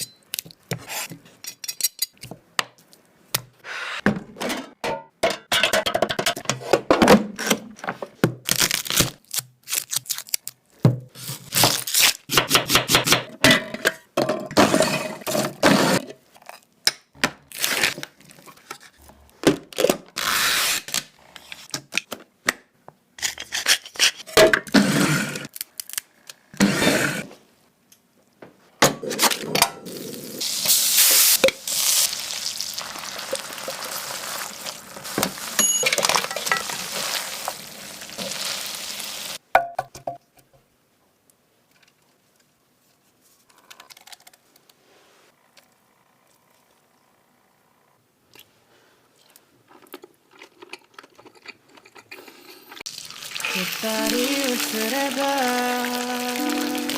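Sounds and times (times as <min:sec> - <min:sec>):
kitchen knocks and cracks: 0:03.4 - 0:08.5
food frying sizzle: 0:30.4 - 0:39.4, 0:52.9 - 0:56.9.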